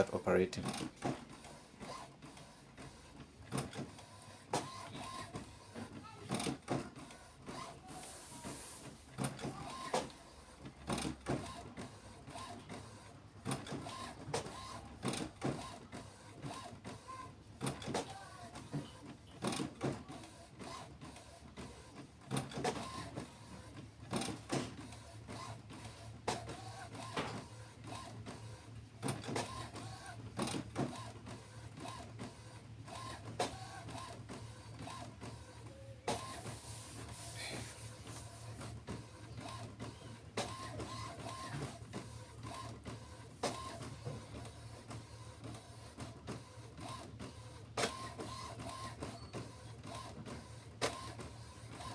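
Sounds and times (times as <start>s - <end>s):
printer mechanism whirring: 0.0s - 51.9s
printer clicks and clunks: 0.6s - 37.2s, 37.9s - 51.9s.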